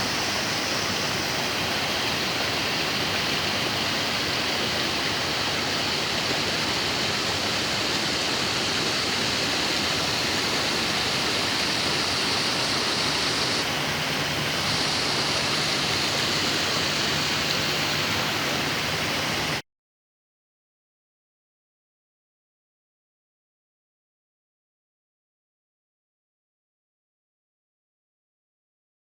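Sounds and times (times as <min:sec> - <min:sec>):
waterfall rushing: 0:00.0 - 0:19.6.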